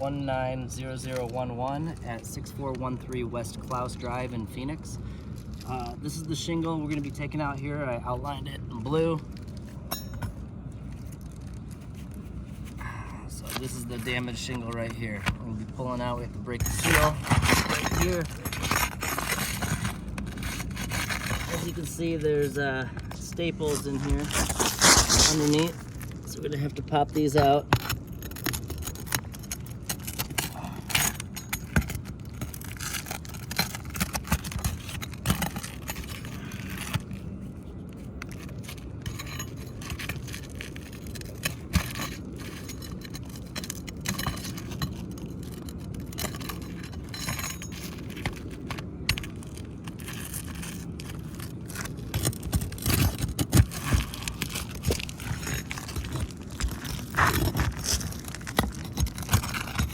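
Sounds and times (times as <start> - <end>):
metal-on-metal scraping: 13.4 - 59.9.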